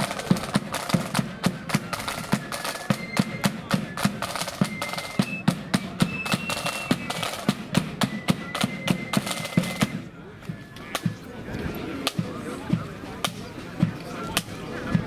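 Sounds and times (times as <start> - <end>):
high flute melody: 0.0 - 11.0
snare drum strikes: 13.2 - 13.4.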